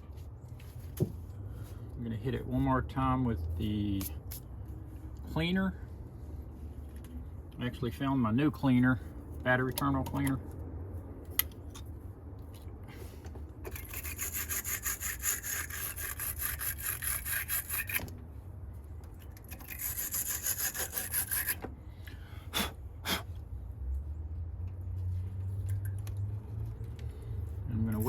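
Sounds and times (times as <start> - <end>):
wire brush scraping battery post: 13.6 - 18.2, 19.4 - 21.7.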